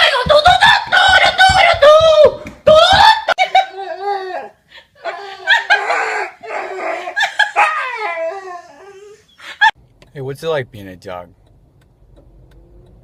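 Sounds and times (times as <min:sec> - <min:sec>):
dog howling: 0:03.6 - 0:09.3.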